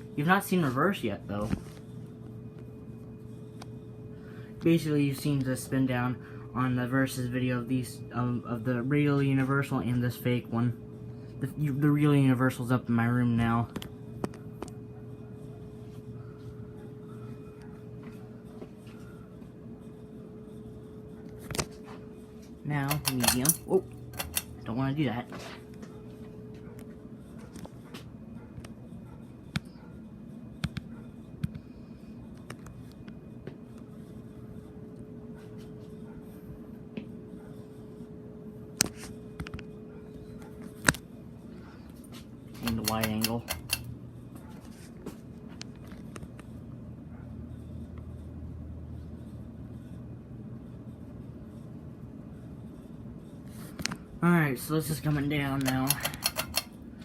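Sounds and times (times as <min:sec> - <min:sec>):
ceiling fan motor hum: 0:00.0 - 0:57.0
sharp clicks: 0:42.6 - 0:43.9, 0:55.6 - 0:56.8.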